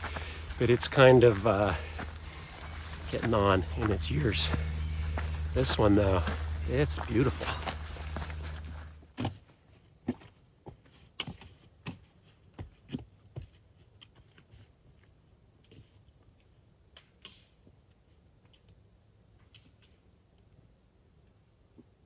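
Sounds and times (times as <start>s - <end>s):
crunching footsteps on trail: 0.0s - 9.0s.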